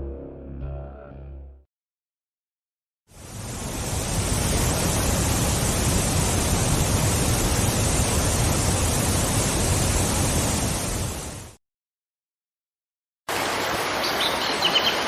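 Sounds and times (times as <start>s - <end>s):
waterfall rushing: 3.1s - 11.6s, 13.3s - 15.0s.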